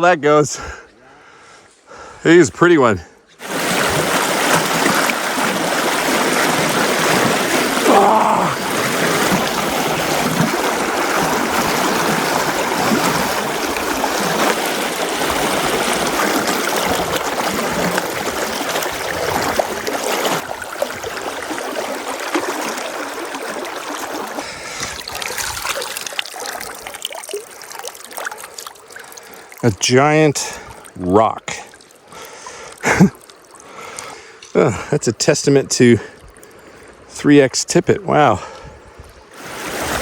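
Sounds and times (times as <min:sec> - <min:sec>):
river water rushing: 0:03.4 - 0:29.7, 0:39.4 - 0:40.0.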